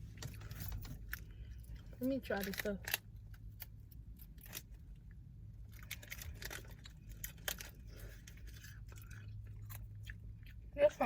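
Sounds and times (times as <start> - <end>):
steady low hum: 0.0 - 11.0
person crunching crisp snack: 5.6 - 10.6.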